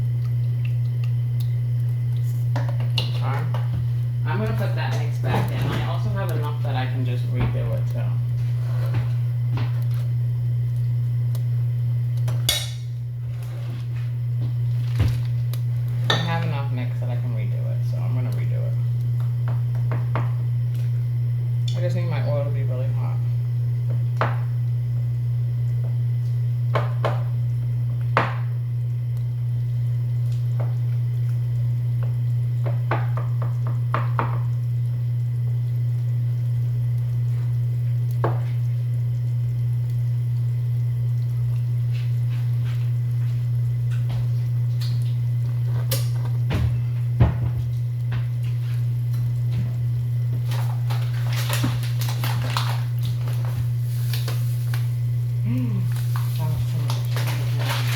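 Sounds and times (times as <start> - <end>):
batter frying in oil: 0.0 - 57.9
steady low hum: 0.0 - 57.9.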